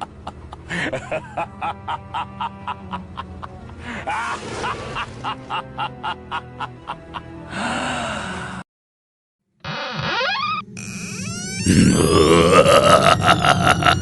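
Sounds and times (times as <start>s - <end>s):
evil demon laugh: 0.0s - 7.3s, 11.9s - 14.0s.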